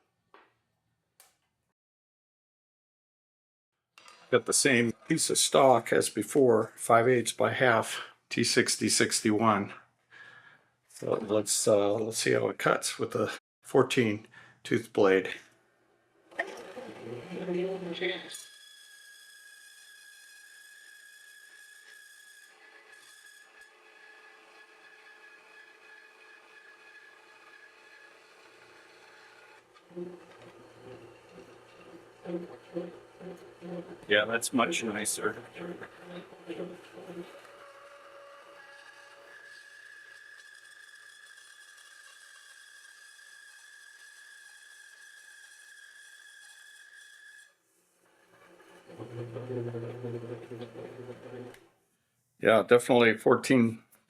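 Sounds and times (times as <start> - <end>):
band saw cutting metal: 16.3 - 51.7.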